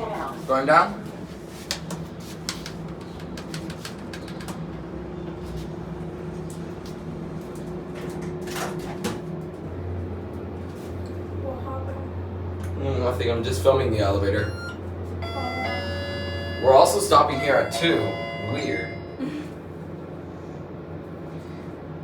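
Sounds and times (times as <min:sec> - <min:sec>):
ventilation fan humming: 0:00.0 - 0:22.0
deep hum: 0:14.4 - 0:19.6.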